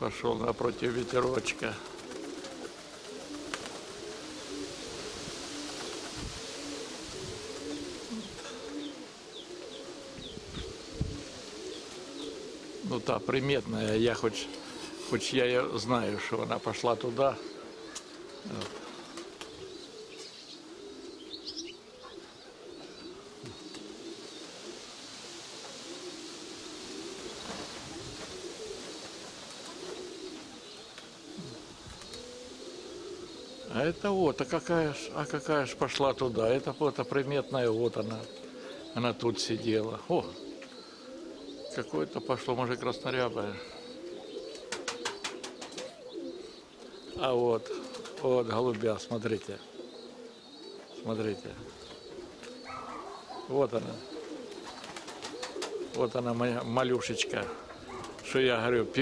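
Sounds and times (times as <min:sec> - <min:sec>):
pigeons cooing: 0:00.0 - 0:59.0
windy hiss: 0:00.0 - 0:59.0
small bird chirping: 0:49.6 - 0:55.9.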